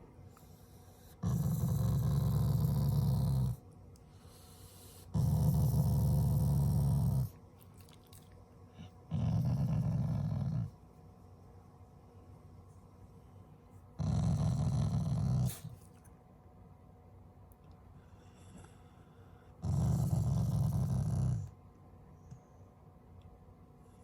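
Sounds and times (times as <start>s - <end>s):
dog growling low: 1.0s - 3.6s, 4.8s - 7.4s, 8.8s - 10.8s, 14.0s - 15.9s, 19.6s - 21.6s.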